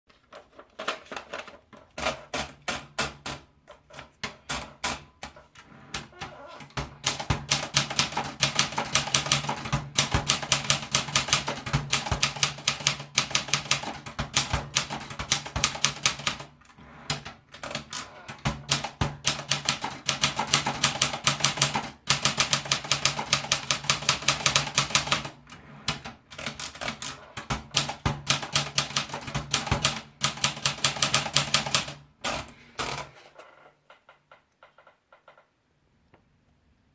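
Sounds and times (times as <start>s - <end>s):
typewriter key strikes: 6.8s - 16.5s, 17.6s - 25.4s.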